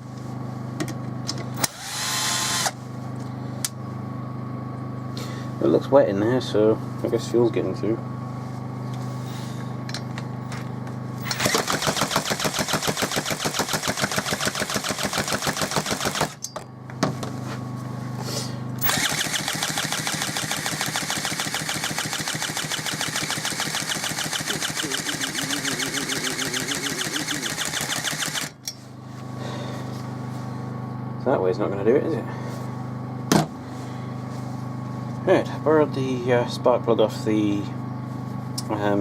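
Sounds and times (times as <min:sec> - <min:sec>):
steady low hum: 0:00.0 - 0:39.0
chainsaw engine cranking without firing: 0:11.2 - 0:16.5, 0:18.8 - 0:28.6.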